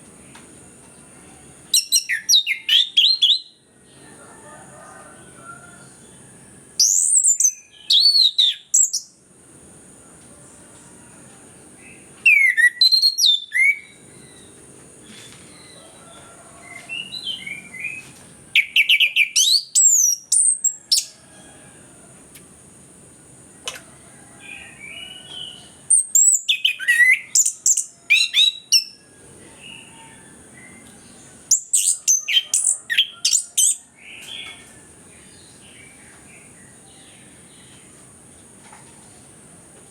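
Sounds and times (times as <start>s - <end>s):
thrush singing whistles and chirps: 1.8s - 3.6s, 6.8s - 9.2s, 12.2s - 14.6s, 18.6s - 21.2s, 24.5s - 29.1s, 31.5s - 34.6s.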